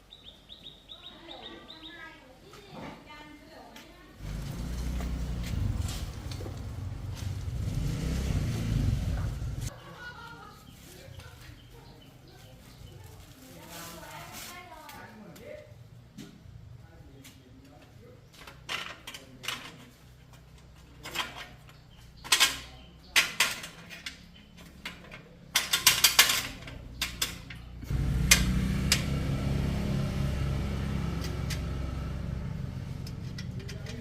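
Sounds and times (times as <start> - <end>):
metal tools clinking: 18.4 - 27.7
machine humming: 27.9 - 31.0.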